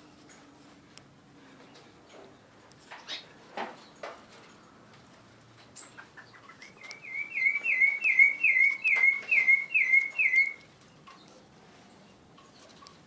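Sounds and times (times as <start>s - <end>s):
bird singing repeated notes: 5.8s - 10.7s
faint higher bird chirps: 5.8s - 10.7s.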